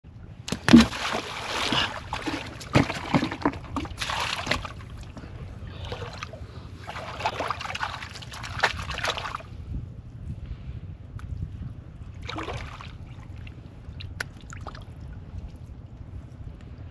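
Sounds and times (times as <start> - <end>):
muddy water sloshing and splashing: 0.4 - 9.7, 12.0 - 16.1.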